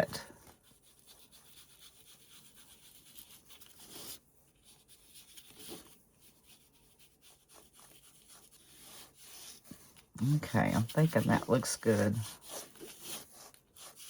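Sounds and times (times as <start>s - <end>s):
ink pad scuffing paper card: 4.8s - 14.0s.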